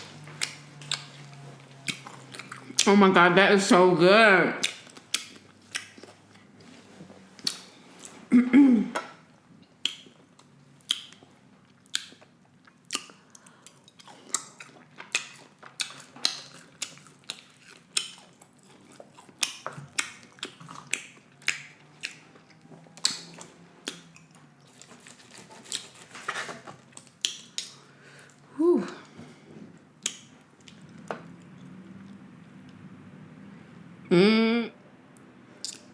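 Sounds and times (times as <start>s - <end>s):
wet chewing mouth clicks: 0.3s - 2.9s, 4.6s - 6.5s, 7.4s - 8.2s, 9.8s - 24.9s, 27.0s - 27.8s, 30.0s - 32.2s, 35.2s - 35.9s
person humming approval: 28.6s - 29.0s, 34.1s - 34.8s.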